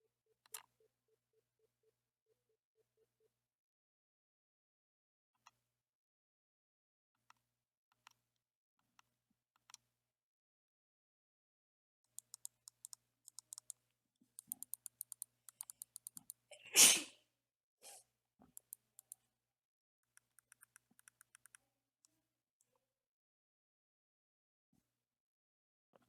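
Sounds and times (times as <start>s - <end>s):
mouse buttons clicking: 12.1s - 13.8s, 14.4s - 16.4s, 20.2s - 21.6s.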